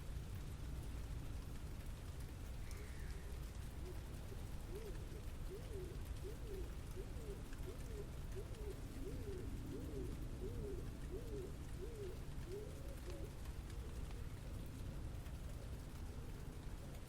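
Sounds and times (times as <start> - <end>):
low city rumble: 0.0 - 17.0
pigeon cooing: 3.8 - 14.4.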